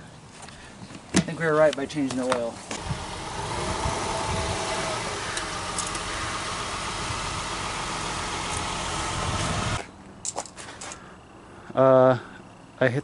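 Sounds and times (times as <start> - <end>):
car engine running: 2.7 - 9.9.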